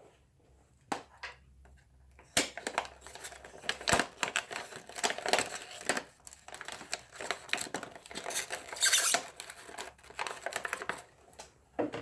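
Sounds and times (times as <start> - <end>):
plastic packaging clicking and crinkling: 2.2 - 12.0.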